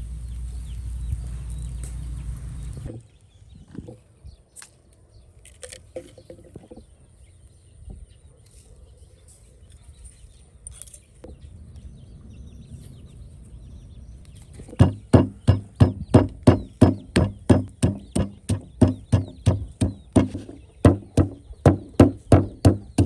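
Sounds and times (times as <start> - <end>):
sharp chopping strikes: 14.8 - 23.0.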